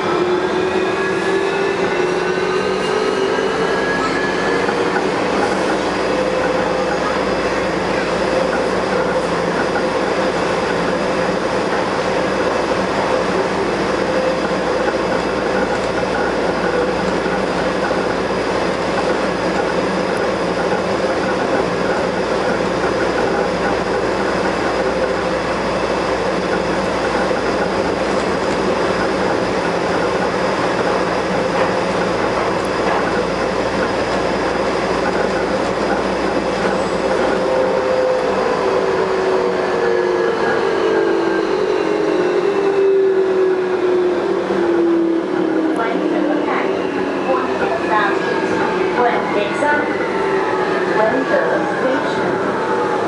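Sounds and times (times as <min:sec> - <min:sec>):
metro train rumble and hiss: 0:00.0 - 0:53.0.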